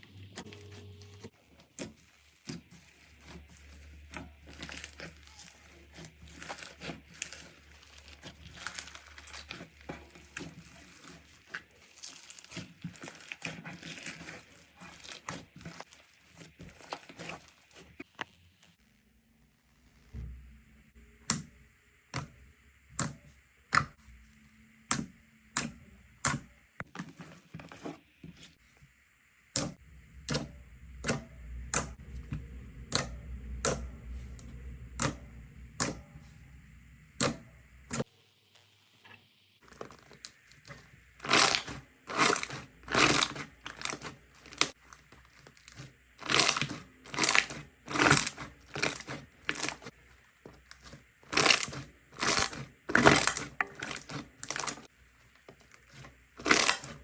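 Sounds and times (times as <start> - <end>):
slime popping and crackling: 1.6 - 17.8, 39.6 - 49.9, 50.6 - 54.8, 55.7 - 57.0.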